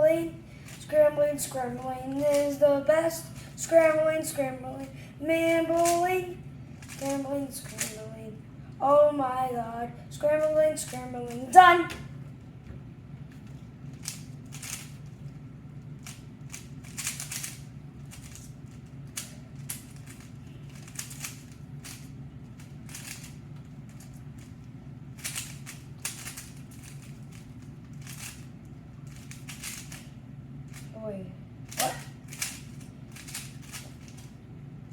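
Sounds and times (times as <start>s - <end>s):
steady low hum: 0.0s - 34.9s
plastic cube clicking: 16.0s - 17.6s.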